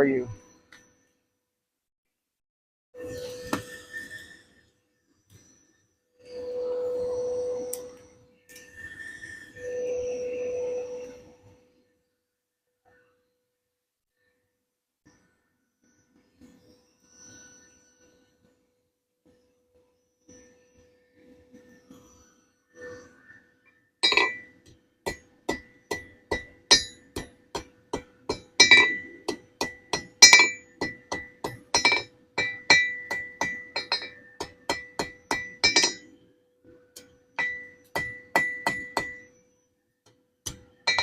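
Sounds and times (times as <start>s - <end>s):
hammer striking steel on anvil: 24.0s - 24.5s, 25.1s - 36.1s, 37.0s - 39.3s, 40.5s - 41.0s.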